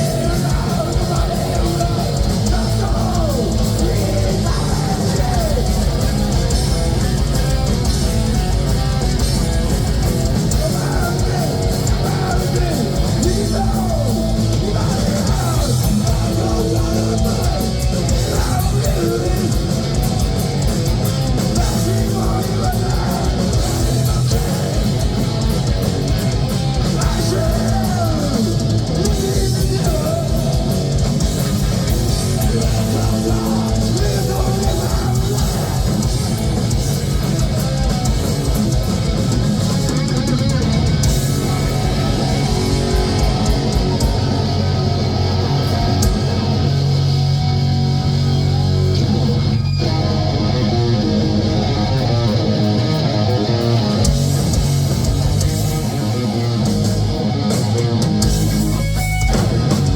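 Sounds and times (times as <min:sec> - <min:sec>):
heavy metal band playing live: 0:00.0 - 0:59.9.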